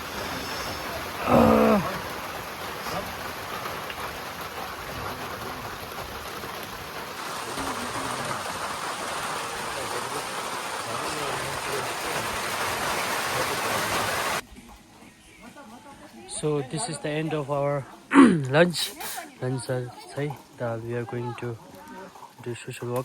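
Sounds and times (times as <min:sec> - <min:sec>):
rushing hissing noise: 0:00.0 - 0:14.4.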